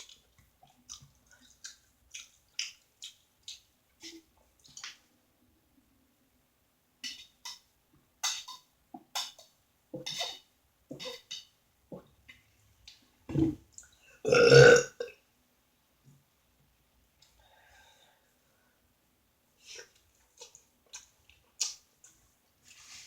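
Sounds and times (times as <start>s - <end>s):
loud burp: 14.2s - 15.1s.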